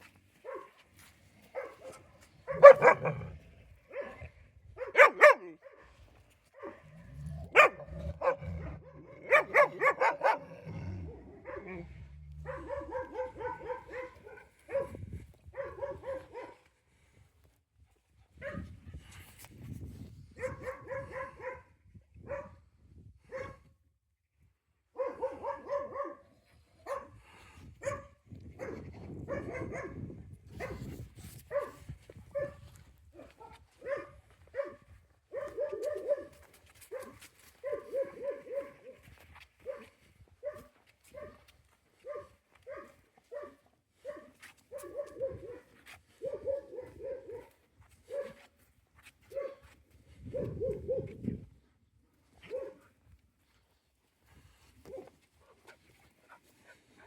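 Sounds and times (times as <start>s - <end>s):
dogs barking: 0.4s - 0.8s, 1.5s - 5.9s, 7.5s - 10.7s, 12.4s - 16.6s, 20.4s - 21.6s, 25.0s - 26.2s, 33.2s - 39.0s, 42.0s - 47.5s, 49.3s - 49.6s.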